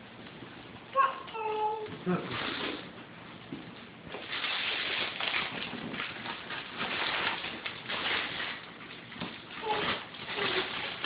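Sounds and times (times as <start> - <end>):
wrapping paper rustling and tearing: 4.1 - 11.0.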